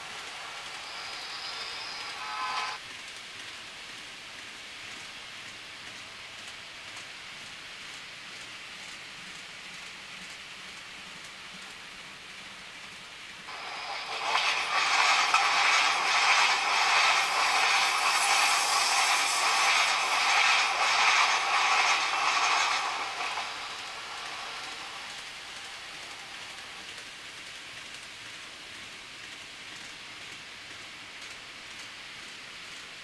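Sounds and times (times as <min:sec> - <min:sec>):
train passing: 0:00.0 - 0:02.8, 0:13.5 - 0:32.8
steady background hiss: 0:00.0 - 0:33.0.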